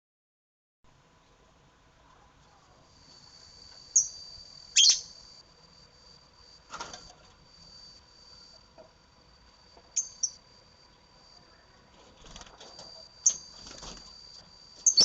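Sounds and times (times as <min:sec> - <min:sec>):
birds chirping: 0:04.8 - 0:05.1.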